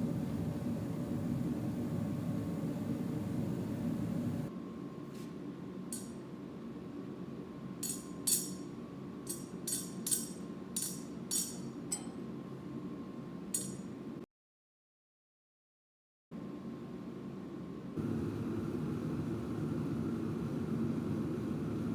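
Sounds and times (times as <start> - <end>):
hammer tapping on steel: 9.3 - 12.1, 13.6 - 13.9.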